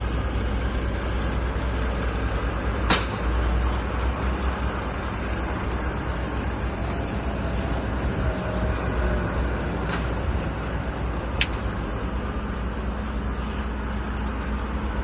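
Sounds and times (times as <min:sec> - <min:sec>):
boat engine rumble: 0:00.0 - 0:15.0
sharp click: 0:11.4 - 0:11.7.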